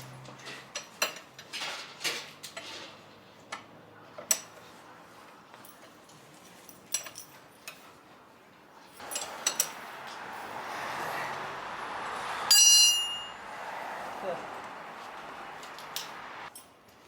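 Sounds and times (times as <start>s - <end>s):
metal tools clinking: 5.6s - 7.9s, 8.9s - 10.2s
ringing metal clink: 9.0s - 9.8s, 12.5s - 13.4s.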